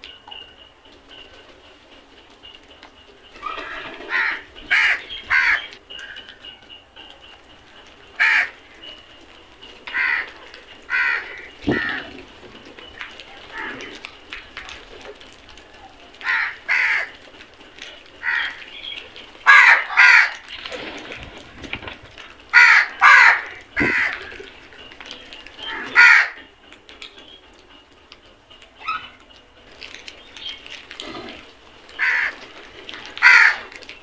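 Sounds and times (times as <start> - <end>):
crows cawing: 3.4 - 6.4, 8.1 - 8.9, 9.8 - 12.2, 13.4 - 14.1, 16.2 - 17.3, 18.2 - 18.7, 19.4 - 20.5, 22.5 - 24.6, 25.6 - 26.5, 31.1 - 33.9.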